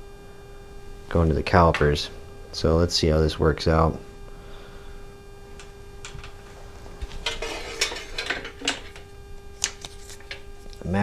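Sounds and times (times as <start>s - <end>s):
electrical hum: 0.0s - 11.0s
metal parts clinking: 7.1s - 9.1s.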